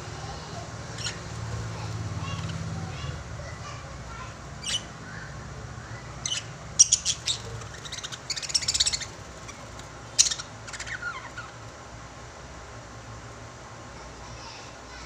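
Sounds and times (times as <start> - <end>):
lovebirds chirping: 0.0 - 3.2, 4.5 - 11.7.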